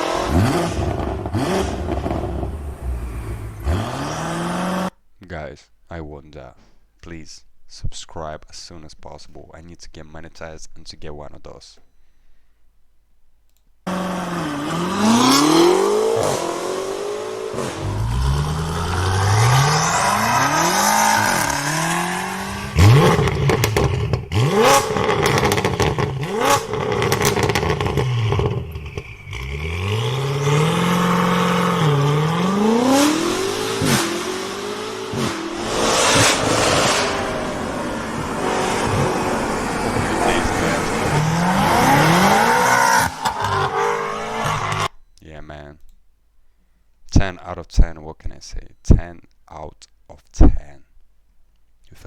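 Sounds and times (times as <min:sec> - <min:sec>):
car engine revving: 0:00.0 - 0:04.9, 0:13.9 - 0:44.9
sharp exhaust cracks: 0:00.0 - 0:04.9, 0:15.8 - 0:44.8.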